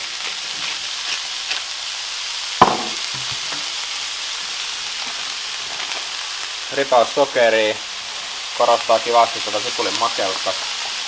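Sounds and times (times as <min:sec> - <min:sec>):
onions sizzling in a frying pan: 0:00.0 - 0:11.0
utensil knocking on pan: 0:02.6 - 0:03.5.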